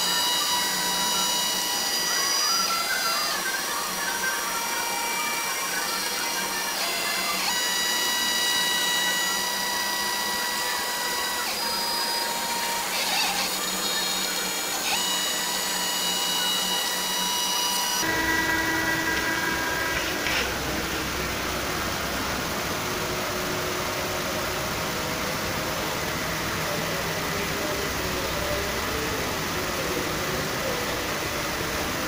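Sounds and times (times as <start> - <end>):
stepper motors whining: 0.0 - 32.0
low hum: 18.0 - 25.0.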